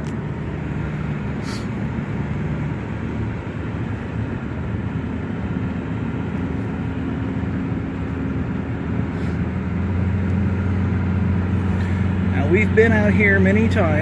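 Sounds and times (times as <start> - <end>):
engine and road hum: 0.0 - 14.0.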